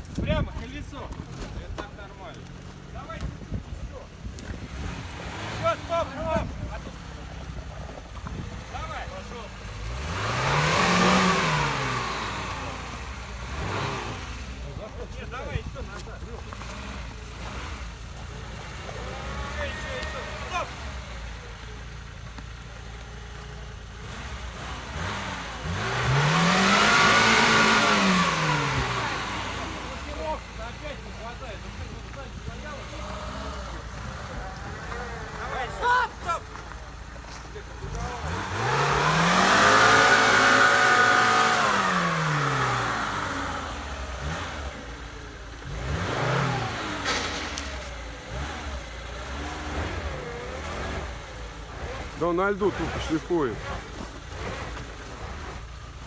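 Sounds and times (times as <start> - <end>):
engine revving: 0.0 - 56.0
wheels spinning on ice: 0.0 - 56.0.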